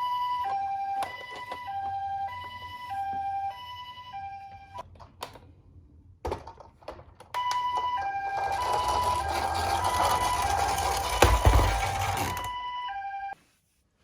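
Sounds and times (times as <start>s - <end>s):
toy two-tone siren: 0.0s - 4.8s, 7.4s - 13.4s
plastic clicks and knocks: 4.8s - 5.5s, 6.2s - 8.0s.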